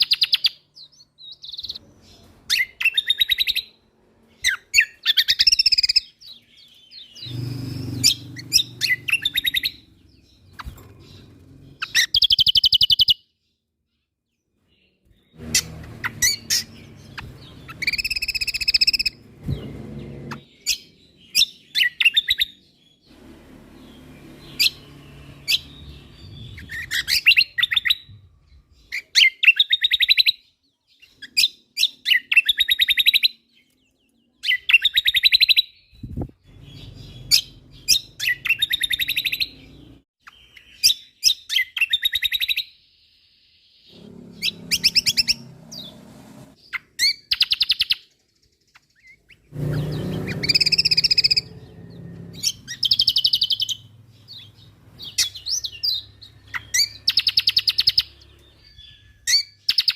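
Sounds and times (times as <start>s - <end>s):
bird chirping trills: 0.0s - 59.9s.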